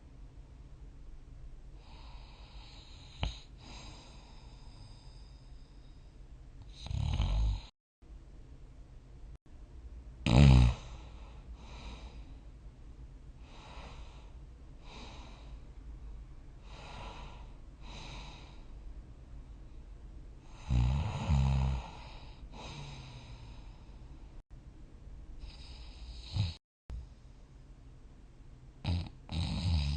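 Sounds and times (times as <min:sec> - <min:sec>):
person snoring: 0:06.7 - 0:07.7, 0:10.2 - 0:12.3, 0:20.5 - 0:23.8, 0:25.4 - 0:26.6, 0:28.8 - 0:29.9.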